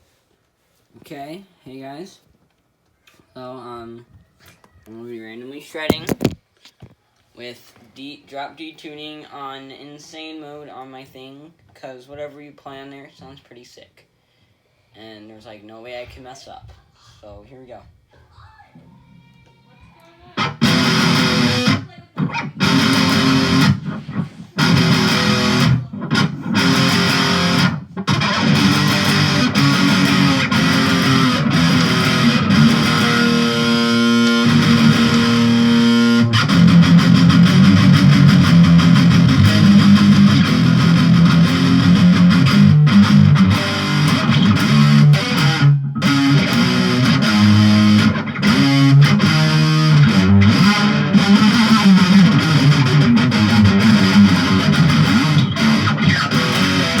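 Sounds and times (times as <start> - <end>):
distorted electric guitar: 20.3 - 57.0.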